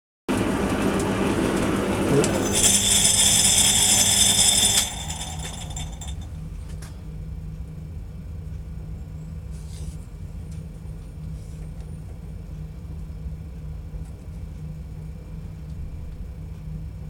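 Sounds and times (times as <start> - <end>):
metal lathe running: 1.9 - 6.3
high-pitched ringing squeal: 2.3 - 6.3.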